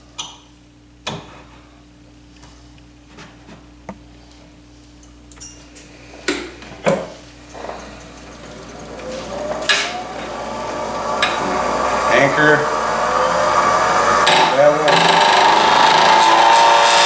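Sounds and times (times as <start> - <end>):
lathe motor whine: 7.4 - 17.0.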